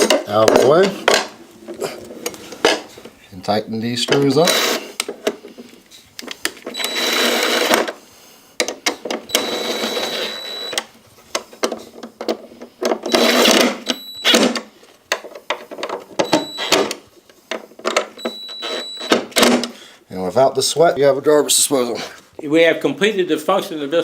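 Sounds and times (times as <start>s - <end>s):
cordless drill whining: 4.4s - 5.0s, 6.7s - 7.9s, 9.3s - 10.8s, 13.1s - 14.5s, 18.2s - 19.1s.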